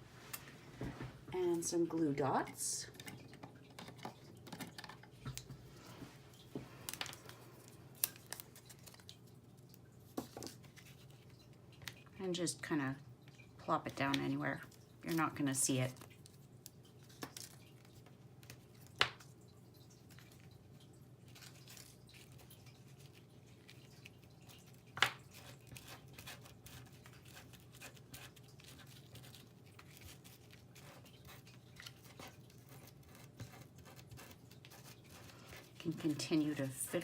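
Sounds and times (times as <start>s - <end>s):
faint rustling of card and ribbon: 5.4s - 19.3s, 20.0s - 37.0s.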